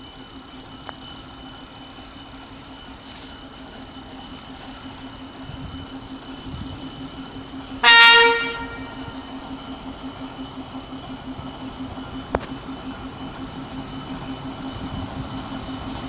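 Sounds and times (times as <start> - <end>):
diesel engine idling: 0.0 - 16.0
locomotive horn blast: 7.8 - 9.3.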